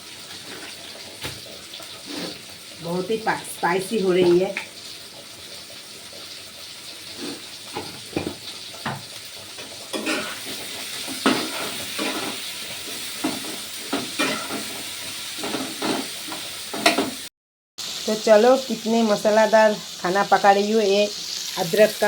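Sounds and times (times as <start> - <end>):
food sizzling in hot oil: 0.0 - 22.0
spatula scraping a pan: 0.2 - 1.1, 1.9 - 2.5, 7.0 - 8.4, 9.6 - 17.2.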